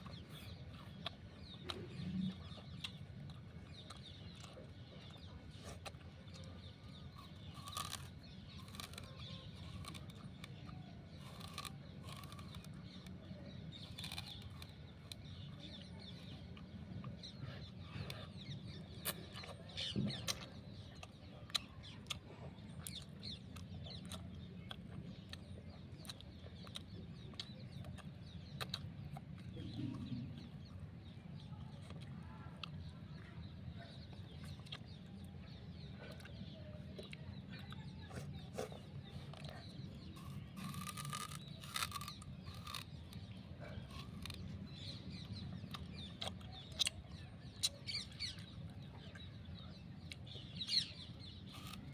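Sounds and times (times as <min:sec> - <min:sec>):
sugarcane cracking and crunching: 0:00.0 - 0:51.9.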